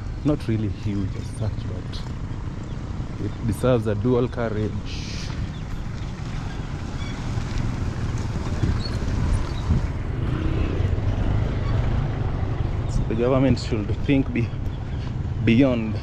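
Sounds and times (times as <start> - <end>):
road traffic rumble: 0.0 - 16.0
wind on microphone: 5.2 - 15.4.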